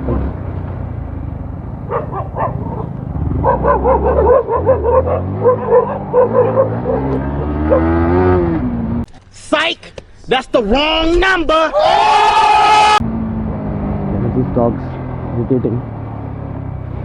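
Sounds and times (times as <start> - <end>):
motorcycle engine running: 0.0 - 9.0, 13.0 - 17.0
dogs barking: 1.8 - 8.2.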